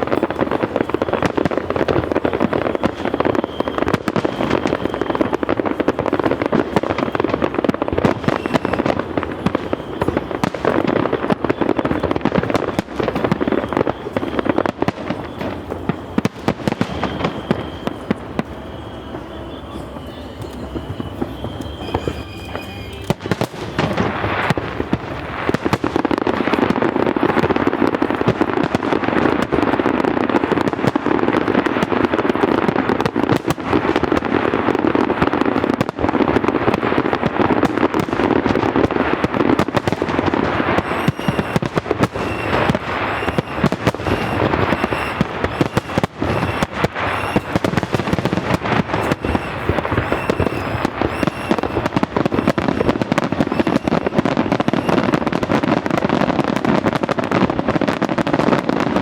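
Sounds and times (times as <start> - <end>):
fireworks bangs and crackling: 0.0 - 59.0
short high tones: 16.8 - 23.9, 40.1 - 55.6.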